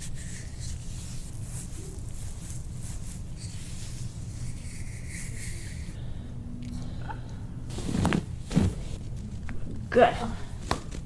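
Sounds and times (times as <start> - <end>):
steady low hum: 0.0 - 11.0
rustling on treatment table: 7.7 - 9.6.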